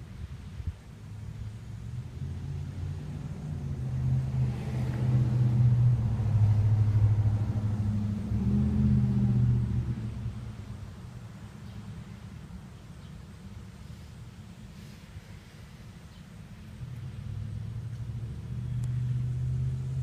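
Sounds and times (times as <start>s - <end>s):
vehicle engine passing by: 1.2s - 11.4s, 16.6s - 20.0s.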